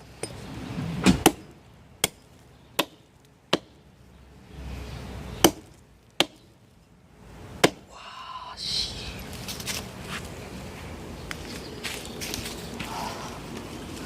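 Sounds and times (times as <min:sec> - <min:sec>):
hatchet chopping log: 0:01.2 - 0:03.8, 0:05.4 - 0:06.5, 0:07.6 - 0:07.9.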